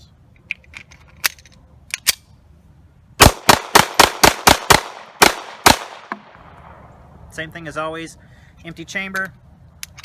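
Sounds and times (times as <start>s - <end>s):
pistol shots: 3.2s - 6.3s.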